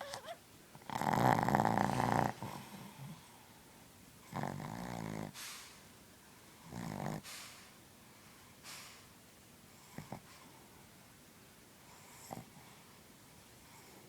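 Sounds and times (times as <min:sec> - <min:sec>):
rattling snores: 0:00.8 - 0:03.2, 0:04.3 - 0:05.4, 0:06.7 - 0:07.2.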